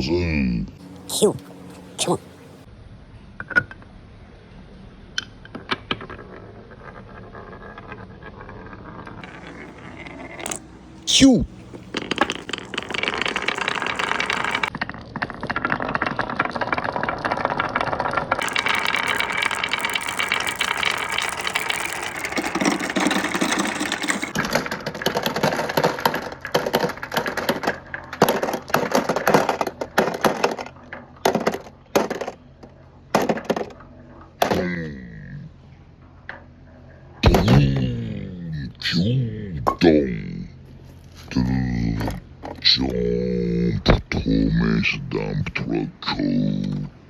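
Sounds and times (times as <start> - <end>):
marbles rattling down wooden run: 6.0 - 32.2.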